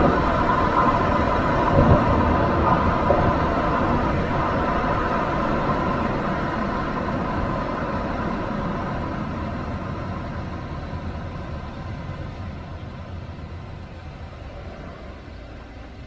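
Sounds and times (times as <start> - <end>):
minivan engine and road noise: 0.0 - 16.0.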